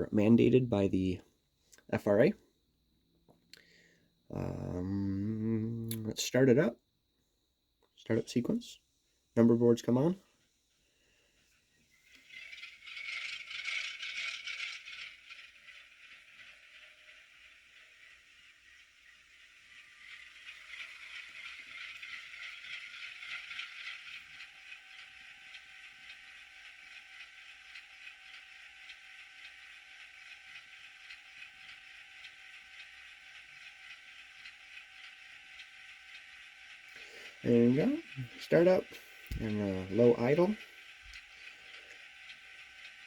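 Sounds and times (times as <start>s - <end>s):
diesel locomotive engine from tiny speaker: 0.0s - 1.3s, 4.2s - 6.8s, 9.4s - 43.0s
diesel locomotive startup through small speaker: 4.3s - 6.7s, 37.2s - 40.8s.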